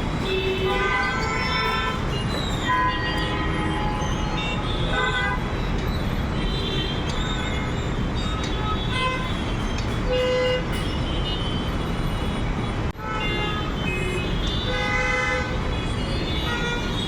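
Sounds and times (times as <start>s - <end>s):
rumble of engines and traffic: 0.0s - 17.0s
vehicle horns honking: 0.2s - 5.5s, 6.4s - 9.5s, 13.0s - 17.0s.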